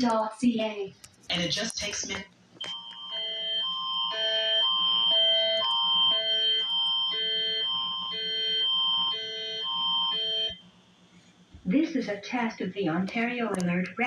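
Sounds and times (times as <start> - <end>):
alternating electronic chime tones: 2.6 - 10.6
steady high tone: 2.6 - 10.6.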